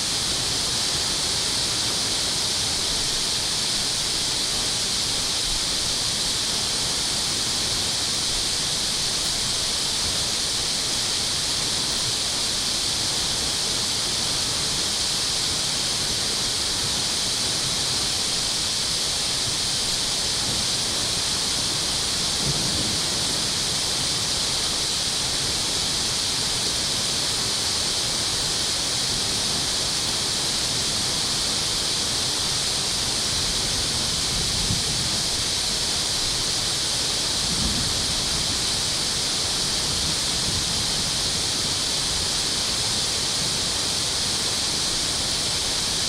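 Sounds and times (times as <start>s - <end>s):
water rushing through dam outlet: 0.0s - 46.0s.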